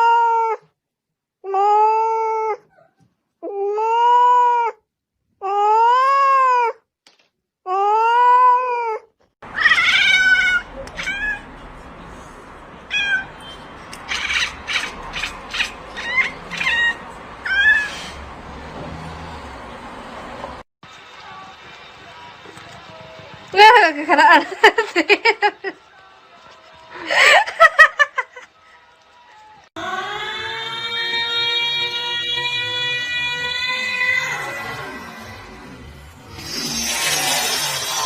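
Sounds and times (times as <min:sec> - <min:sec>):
cat meowing loudly: 0:09.5 - 0:11.5, 0:12.9 - 0:13.4, 0:14.1 - 0:18.1.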